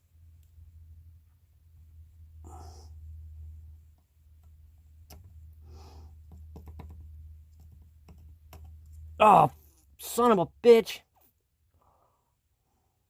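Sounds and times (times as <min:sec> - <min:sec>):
steady low hum: 0:00.0 - 0:10.7
small clicks and taps of handling: 0:03.9 - 0:05.4, 0:06.2 - 0:09.1.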